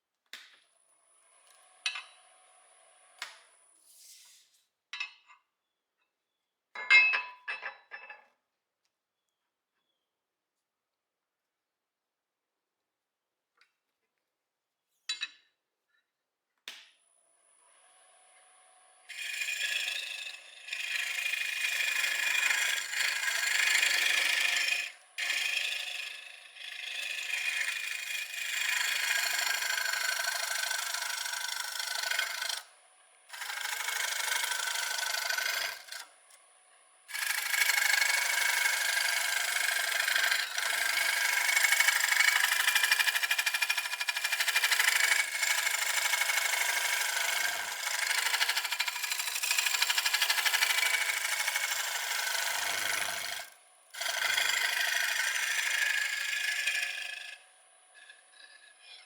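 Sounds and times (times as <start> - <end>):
lathe tool scraping wood: 19.1 - 32.7, 33.3 - 36.1, 37.1 - 59.0.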